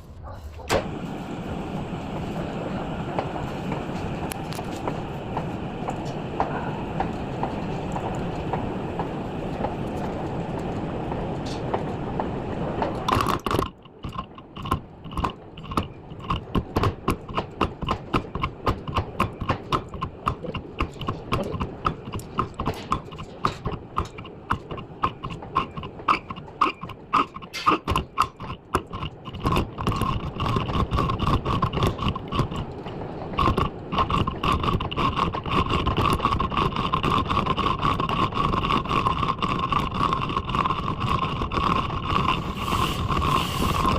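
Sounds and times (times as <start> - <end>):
workshop machinery running: 0.0 - 43.9.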